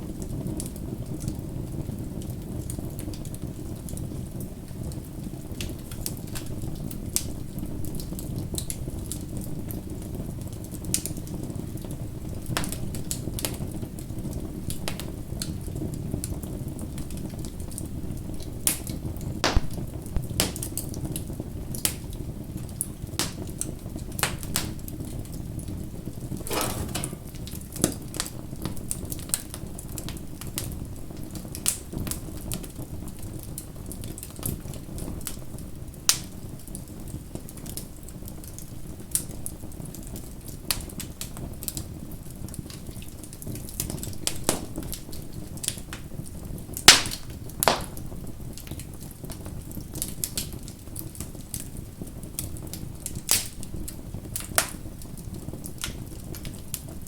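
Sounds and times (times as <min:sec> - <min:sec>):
low rumble of burning: 0:00.0 - 0:57.0
fire popping and snapping: 0:00.2 - 0:57.0.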